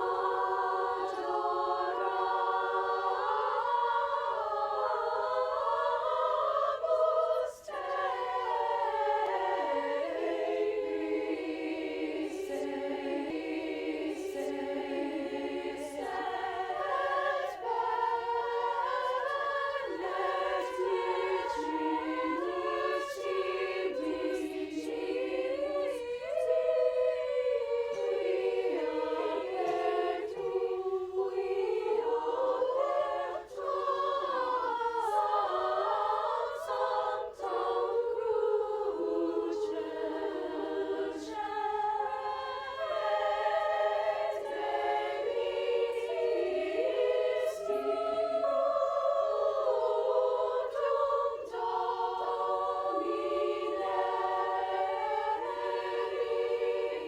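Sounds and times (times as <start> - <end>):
choir singing in parts: 0.0 - 57.0.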